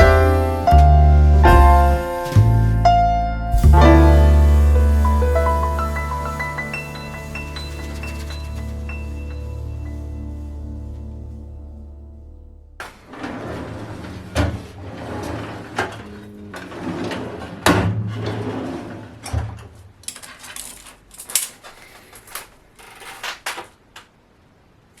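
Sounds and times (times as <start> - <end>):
low rumble: 0.0 - 17.4
metal drawers sliding: 12.8 - 22.2.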